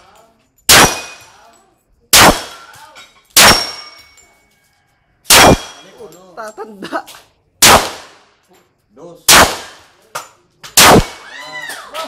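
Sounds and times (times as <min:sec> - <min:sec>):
pistol shots: 0:00.7 - 0:01.4, 0:02.1 - 0:02.8, 0:03.4 - 0:04.0, 0:05.3 - 0:05.9, 0:07.6 - 0:08.4, 0:09.3 - 0:10.0, 0:10.7 - 0:11.3.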